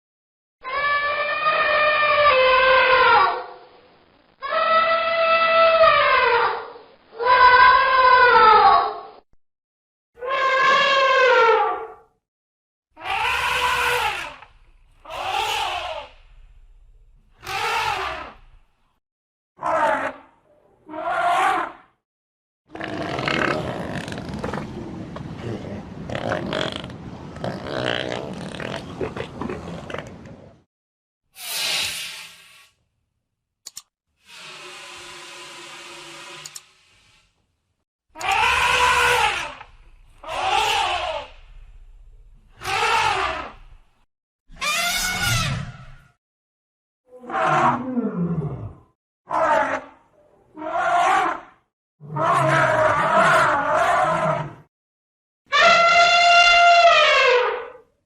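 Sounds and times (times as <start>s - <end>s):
elephant trumpeting: 0.6s - 3.4s, 4.4s - 8.6s, 13.0s - 16.2s, 17.4s - 18.4s, 38.2s - 41.5s, 42.5s - 43.6s, 44.5s - 46.0s, 55.5s - 57.7s
elephant rumbling and grunting: 22.7s - 30.6s
elephant call: 44.6s - 45.7s, 55.5s - 57.5s.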